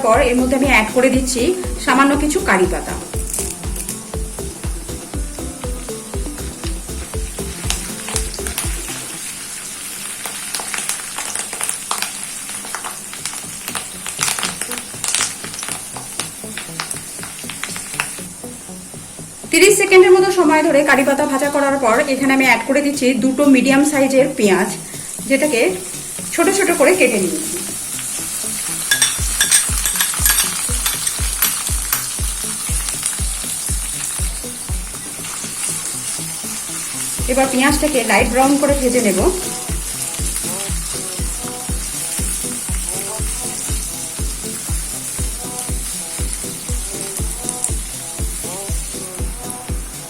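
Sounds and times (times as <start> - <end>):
leaves sizzling in hot oil: 0.0 - 50.0
steady low thump: 0.7 - 9.0
spatula clicking and scraping: 28.9 - 32.2.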